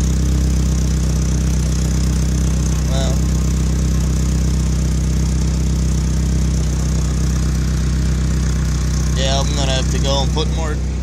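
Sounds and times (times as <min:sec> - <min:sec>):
truck engine idling: 0:00.0 - 0:11.0.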